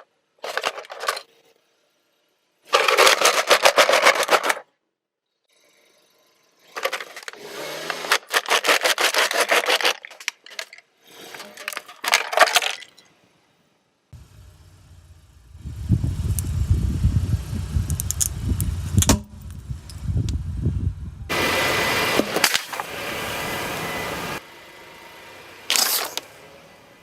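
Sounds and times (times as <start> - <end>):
car engine and tyres rumbling: 14.2 - 27.0
sharp snaps: 17.8 - 20.4
objects crushed under a tyre: 22.2 - 22.9.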